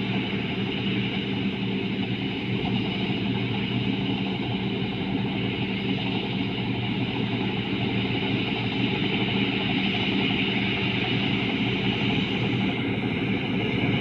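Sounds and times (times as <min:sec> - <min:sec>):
combine harvester engine drone: 0:00.0 - 0:14.0.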